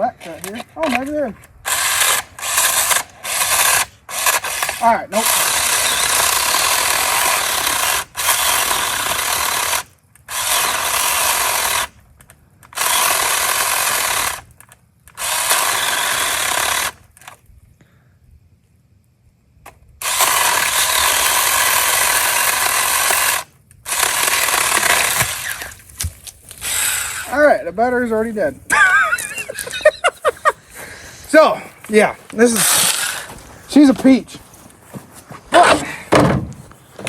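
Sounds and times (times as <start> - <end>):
electric chainsaw cutting branches: 0.2 - 12.0, 12.7 - 17.4, 20.0 - 27.5, 28.7 - 30.9, 31.9 - 34.2.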